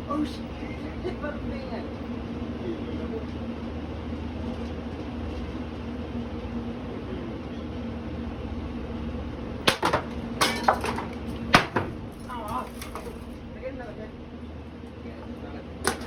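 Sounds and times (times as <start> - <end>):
ceiling fan motor humming: 0.0 - 16.0
sharp knocks on fan blades: 9.6 - 12.1.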